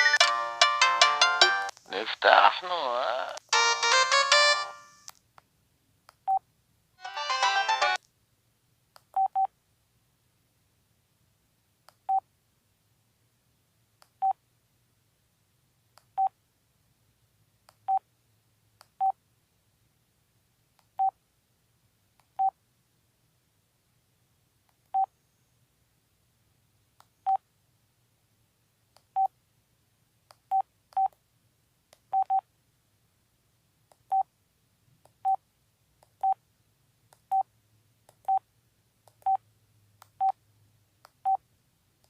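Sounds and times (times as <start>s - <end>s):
phone jingle: 3.5s - 5.0s, 7.0s - 8.0s.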